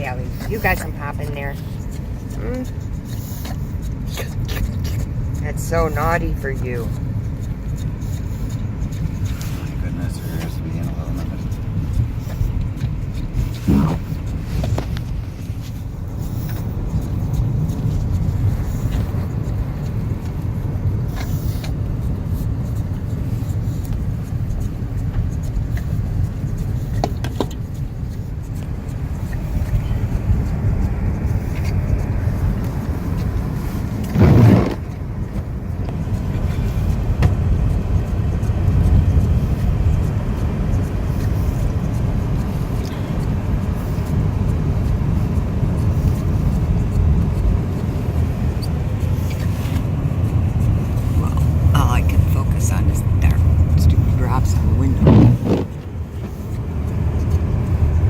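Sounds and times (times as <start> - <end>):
road and engine rumble: 0.0 - 58.0
car bump: 34.0 - 35.0, 54.9 - 55.9.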